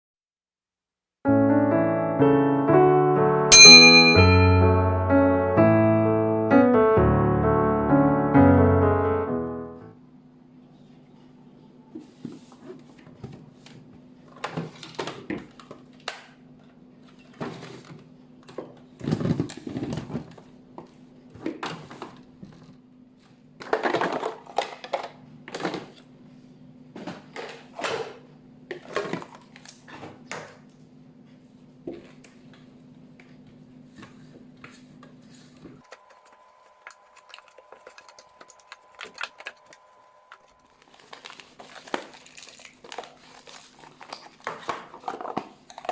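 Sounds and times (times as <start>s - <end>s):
faint high steady tone: 3.5s - 5.2s, 35.8s - 40.8s
food packages being handled: 17.0s - 26.1s, 27.0s - 30.8s, 34.0s - 45.9s.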